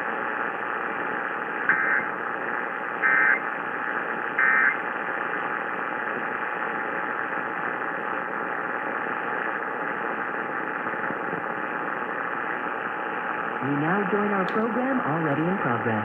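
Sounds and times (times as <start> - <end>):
radio static hiss: 0.0 - 16.0
two-tone digital data warble: 1.7 - 2.1, 3.0 - 3.4, 4.4 - 4.8.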